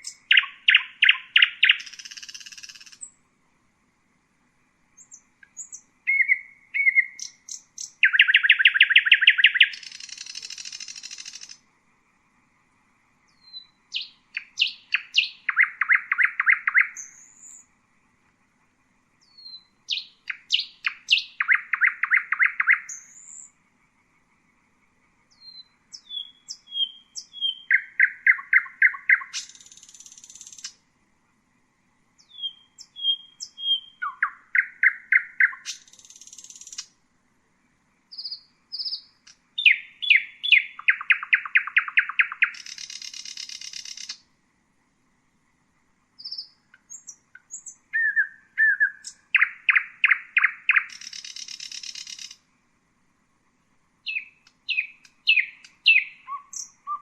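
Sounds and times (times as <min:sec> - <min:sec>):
nightingale singing: 0:00.0 - 0:03.2, 0:04.9 - 0:11.7, 0:13.2 - 0:17.8, 0:19.1 - 0:23.6, 0:25.2 - 0:30.9, 0:32.2 - 0:37.0, 0:38.0 - 0:44.3, 0:46.2 - 0:52.5, 0:54.0 - 0:57.0.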